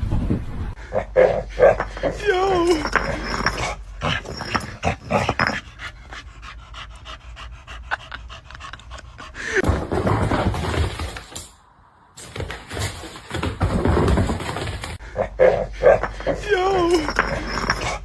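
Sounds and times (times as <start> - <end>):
dog panting: 5.0 - 9.6.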